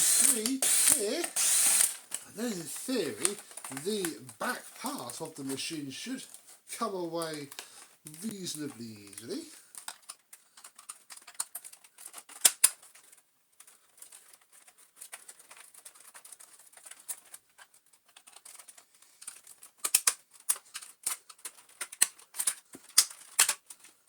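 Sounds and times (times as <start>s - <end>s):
plastic clicks and snaps: 7.2s - 12.9s, 19.2s - 23.9s.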